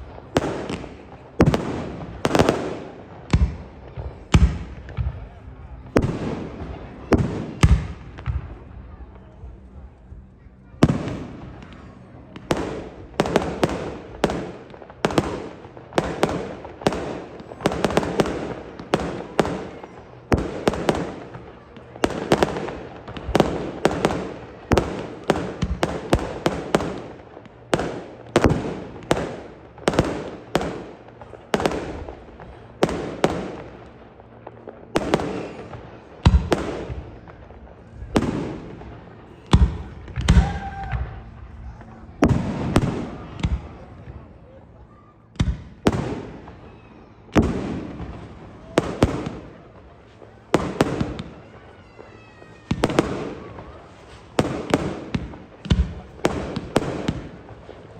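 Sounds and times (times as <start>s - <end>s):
fireworks bursting with echo: 0.0s - 57.9s.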